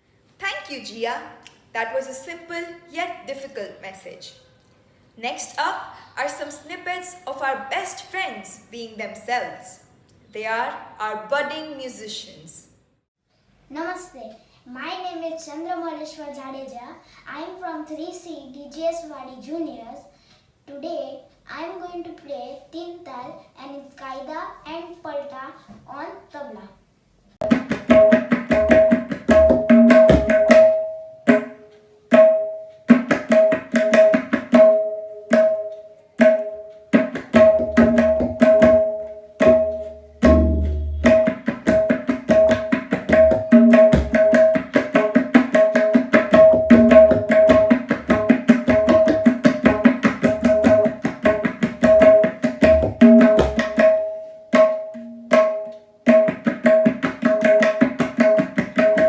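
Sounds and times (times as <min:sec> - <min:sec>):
tabla drumming: 0:27.4 - 0:59.0.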